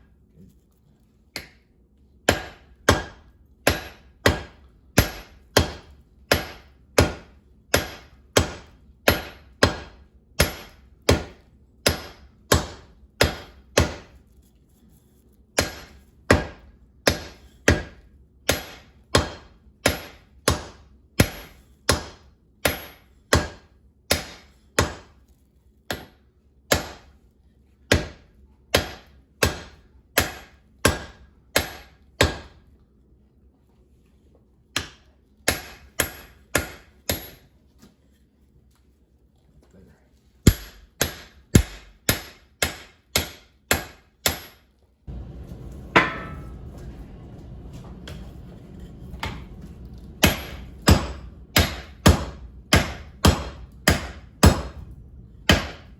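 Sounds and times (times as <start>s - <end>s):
hammer striking steel on anvil: 1.3s - 1.7s, 2.3s - 14.2s, 15.6s - 25.2s, 25.9s - 27.1s, 27.9s - 32.6s, 34.8s - 37.5s, 40.5s - 46.9s, 50.2s - 55.9s.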